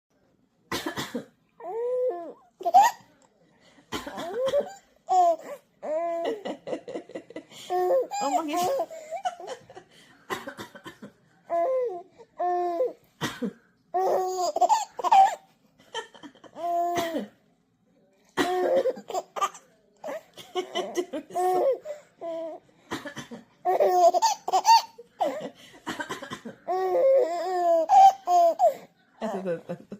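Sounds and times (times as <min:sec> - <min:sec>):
baby coughing: 0:04.0 - 0:05.4, 0:16.8 - 0:17.3, 0:18.4 - 0:19.5
baby laughing: 0:14.0 - 0:15.4, 0:23.6 - 0:25.4, 0:26.0 - 0:28.8.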